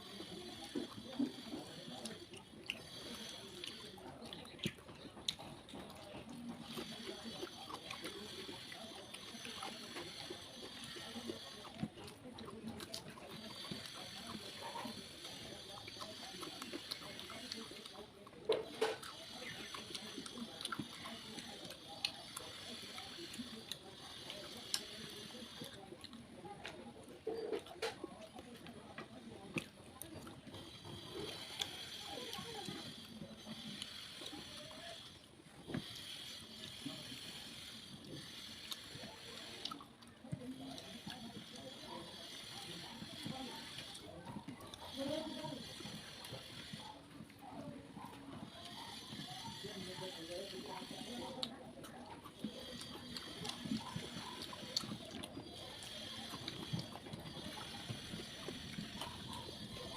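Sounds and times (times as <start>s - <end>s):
wet chewing and squelching: 0.0s - 59.9s
mouth clicks and smacks: 0.1s - 8.1s.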